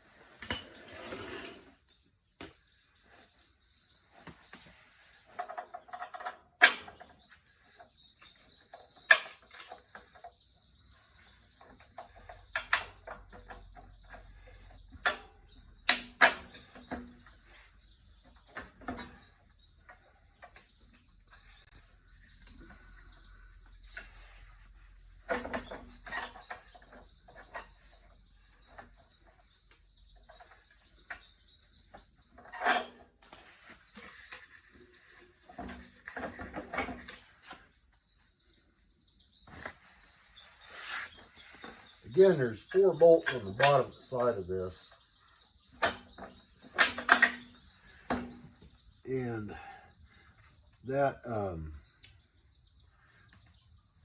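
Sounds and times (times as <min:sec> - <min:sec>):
metal tools clinking: 0:00.2 - 0:01.8, 0:32.7 - 0:34.4.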